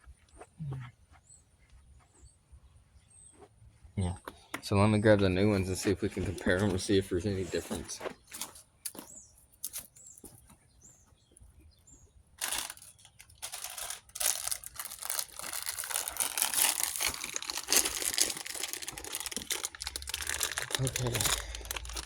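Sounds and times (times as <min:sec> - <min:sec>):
plastic packaging crinkling: 0:12.4 - 0:22.0.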